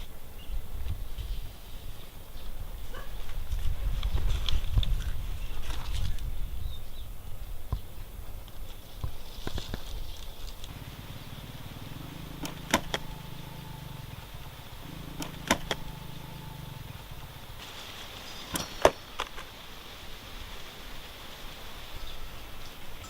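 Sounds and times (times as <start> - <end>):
low motor hum: 10.4 - 17.7
sharp clicks: 12.4 - 13.2, 15.1 - 16.0.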